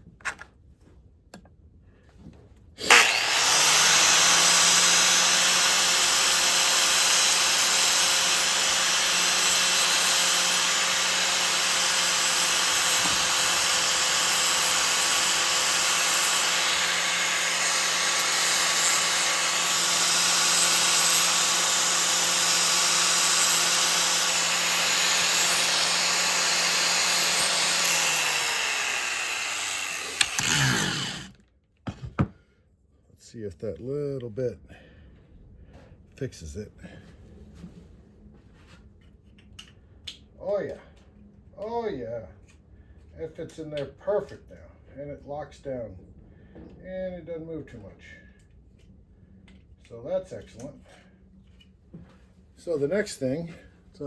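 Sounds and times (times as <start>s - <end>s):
electric grinder running: 2.8s - 31.4s.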